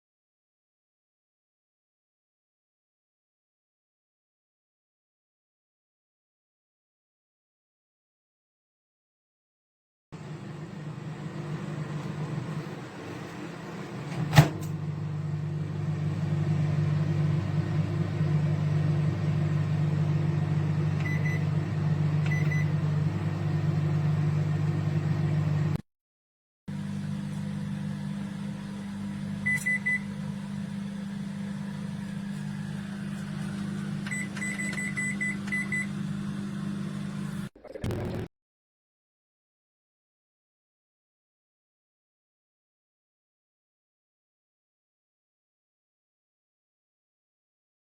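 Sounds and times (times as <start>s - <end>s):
microwave oven humming: 10.2s - 25.8s, 26.7s - 38.3s.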